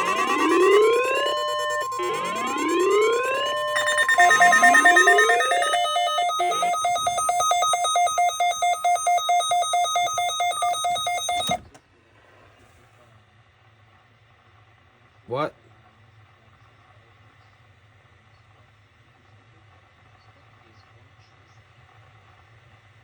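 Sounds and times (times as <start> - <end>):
rising electronic whoops: 0.0 - 11.5
high warning alarm tone: 0.0 - 11.6
rapidly pulsing beep tone: 0.0 - 11.6.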